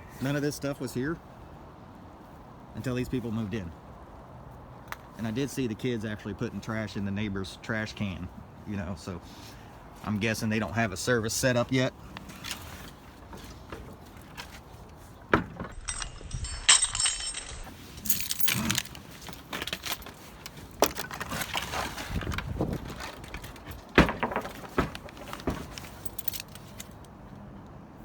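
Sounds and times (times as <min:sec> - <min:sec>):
junk clinking and rattling: 0:12.3 - 0:27.2.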